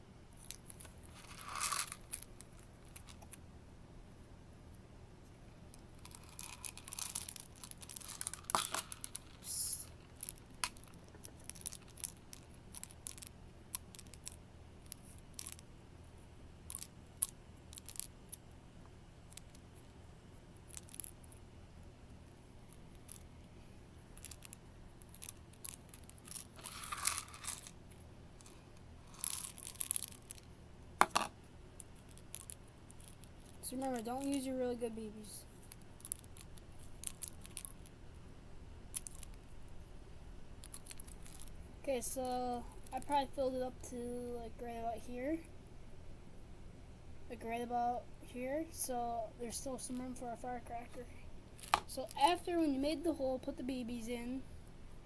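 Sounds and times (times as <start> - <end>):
plastic pellets clicking and rattling: 0.4 - 3.4, 5.7 - 15.7, 16.6 - 18.4, 20.6 - 21.4, 22.7 - 23.3, 24.1 - 38.0, 38.9 - 39.6, 40.6 - 43.5, 51.5 - 53.2.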